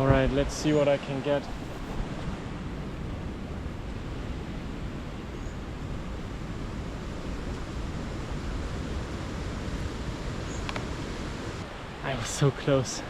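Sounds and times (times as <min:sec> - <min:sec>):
river water rushing: 0:06.3 - 0:13.0
faint high chirp: 0:10.4 - 0:10.7.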